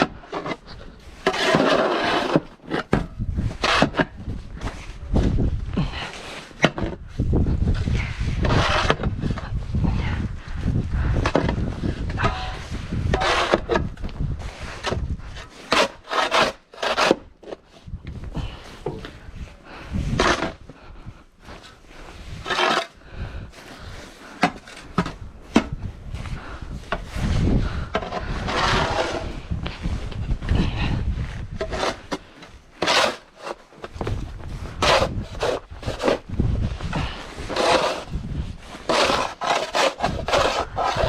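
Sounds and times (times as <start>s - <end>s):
snow shovel scraping snow: 0.4s - 5.0s, 7.8s - 9.1s, 12.3s - 13.8s, 14.4s - 17.3s, 21.5s - 25.0s, 27.0s - 29.5s, 31.6s - 41.0s
wind rumble on microphone: 2.9s - 15.6s, 17.2s - 24.1s, 24.7s - 32.7s, 33.8s - 41.0s.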